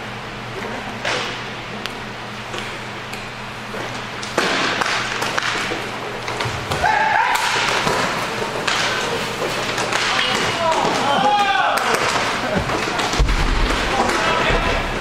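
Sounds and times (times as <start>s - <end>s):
noisy rink background: 0.0s - 15.0s
sticks and puck hitting boards: 4.2s - 15.0s.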